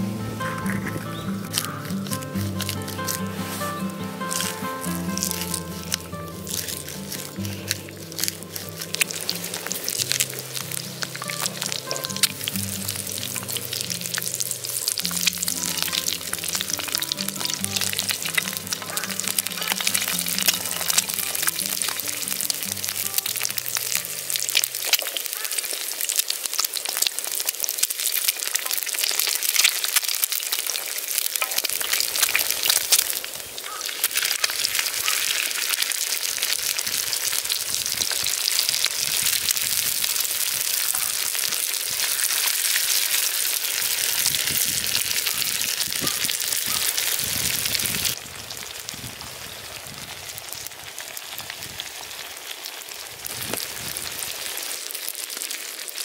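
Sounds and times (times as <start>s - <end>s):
food sizzling in a hot pan: 0.0s - 56.0s.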